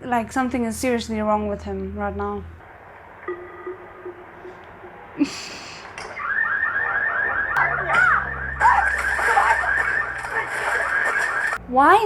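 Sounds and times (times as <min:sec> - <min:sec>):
electronic alarm warbling: 0:03.2 - 0:05.2, 0:06.0 - 0:11.6.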